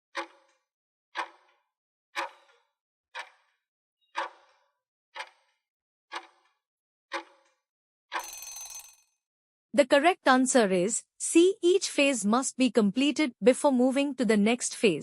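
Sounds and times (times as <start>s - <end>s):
timer ticking: 2.2s - 2.6s, 3.2s - 3.4s, 5.2s - 5.5s, 6.1s - 6.5s.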